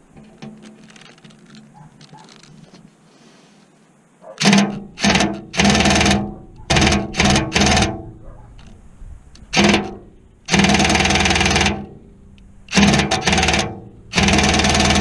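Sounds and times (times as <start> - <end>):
cordless drill bursts: 10.5 - 11.9, 12.7 - 15.0.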